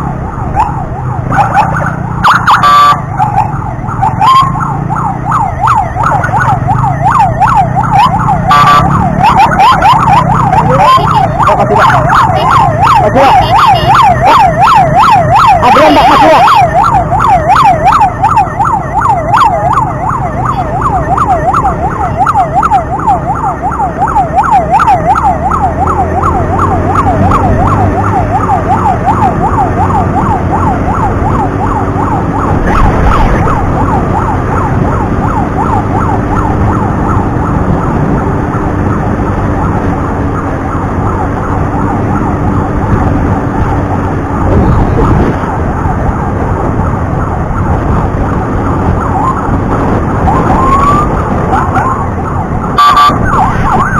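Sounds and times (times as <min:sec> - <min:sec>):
ambulance siren yelping: 0:00.0 - 0:53.9
engine and road noise: 0:00.0 - 0:53.9.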